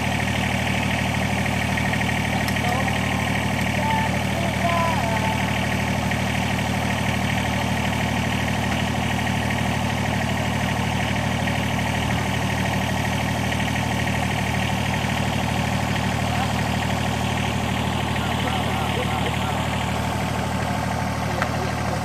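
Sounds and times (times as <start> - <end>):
motor idling hum: 0.0 - 22.0.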